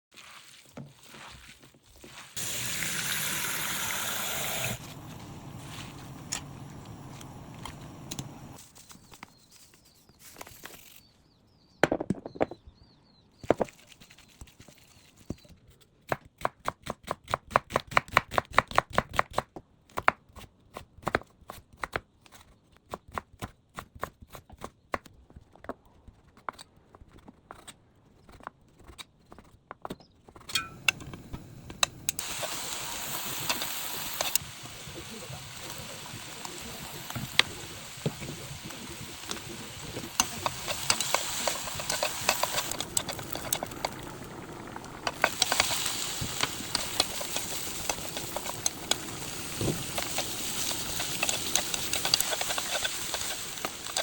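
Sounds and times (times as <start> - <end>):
steady hiss: 2.4 - 8.6, 30.7 - 54.0.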